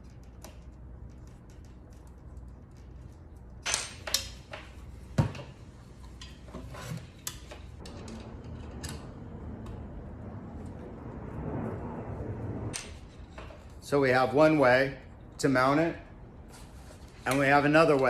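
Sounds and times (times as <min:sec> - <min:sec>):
small metal hardware clinking: 0:03.6 - 0:04.8.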